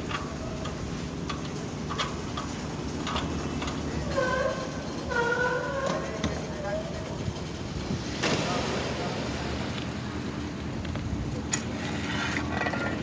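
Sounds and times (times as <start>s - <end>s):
construction machinery engine rumble: 0.0s - 13.0s
faint voices: 3.7s - 10.3s.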